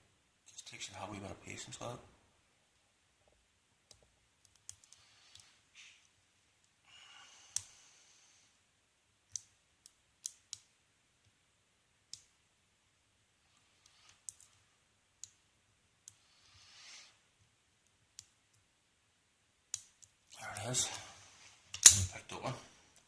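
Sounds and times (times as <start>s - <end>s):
lock pick clicking pins: 21.8s - 22.1s.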